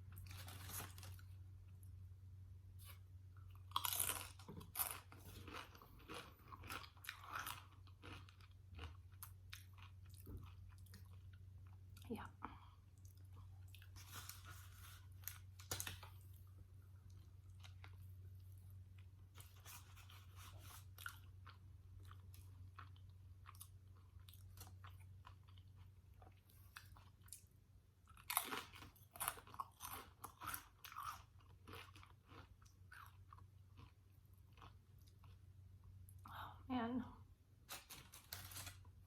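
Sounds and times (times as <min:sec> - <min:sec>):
chewing and crunching chips: 0:00.0 - 0:02.0, 0:02.8 - 0:36.3, 0:37.6 - 0:39.0.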